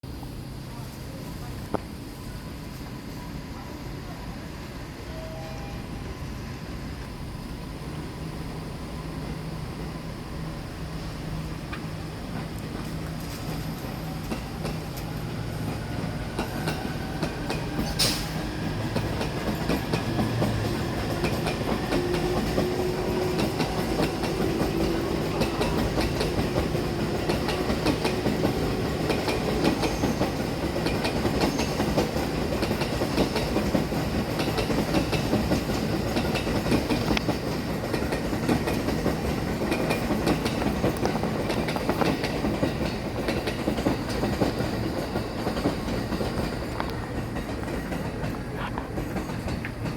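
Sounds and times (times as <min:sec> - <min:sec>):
wheels clicking over rail joints: 0:11.6 - 0:49.9.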